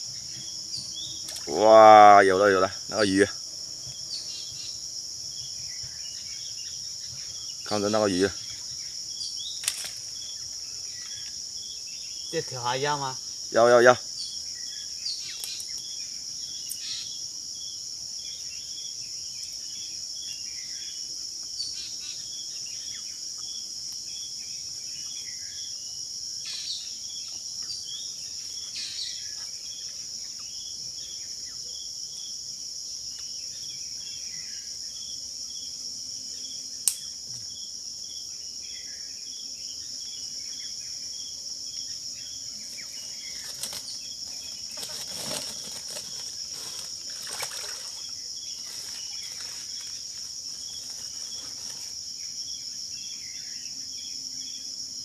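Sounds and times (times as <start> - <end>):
cricket chirping in a pulse: 0.0 - 55.0
crickets buzzing: 0.0 - 55.0
sharp click: 36.8 - 37.1.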